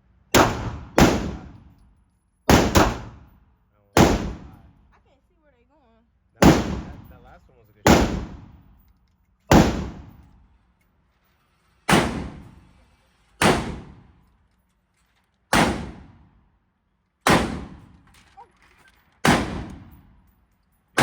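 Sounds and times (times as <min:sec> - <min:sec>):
gunshots: 0:00.3 - 0:01.7, 0:02.5 - 0:03.3, 0:04.0 - 0:04.7, 0:06.4 - 0:08.6, 0:09.5 - 0:10.2, 0:11.9 - 0:12.6, 0:13.4 - 0:14.1, 0:15.5 - 0:16.3, 0:17.3 - 0:18.0, 0:19.2 - 0:20.0.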